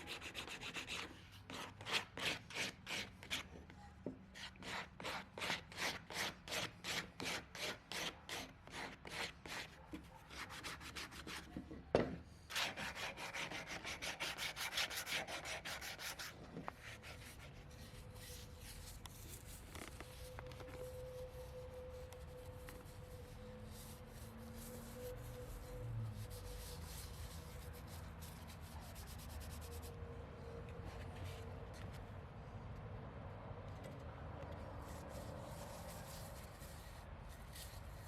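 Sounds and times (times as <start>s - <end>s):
sandpaper rubbing on wood: 0.0s - 3.5s, 12.5s - 17.4s.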